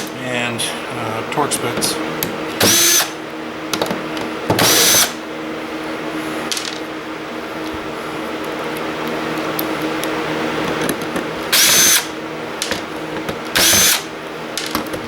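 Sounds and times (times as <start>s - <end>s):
power driver whirring: 1.3s - 5.2s, 9.6s - 15.0s.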